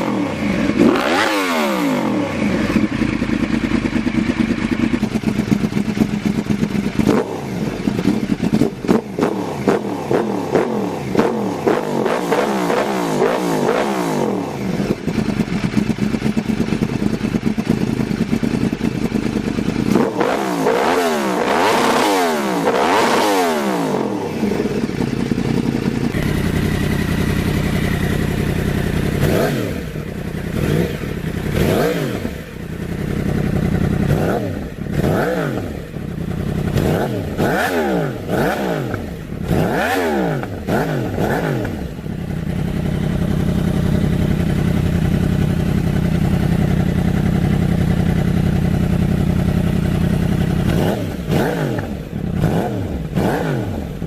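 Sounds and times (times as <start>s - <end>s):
motorcycle engine revving: 0.0s - 54.0s.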